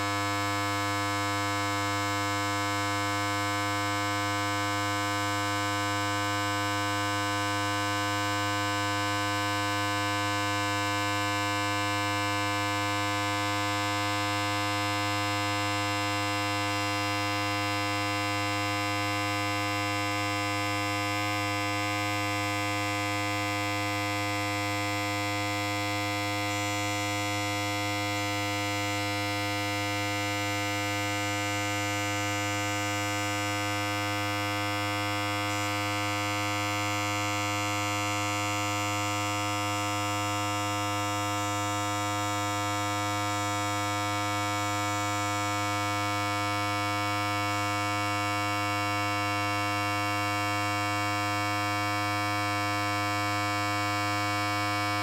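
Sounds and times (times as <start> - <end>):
electric hair clipper buzzing: 21.4 - 43.0.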